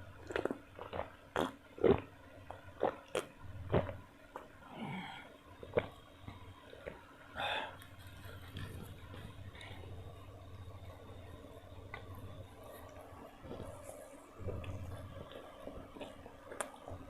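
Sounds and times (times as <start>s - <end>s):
chewing and biting food: 0.1s - 4.6s, 5.6s - 7.1s, 12.7s - 17.0s.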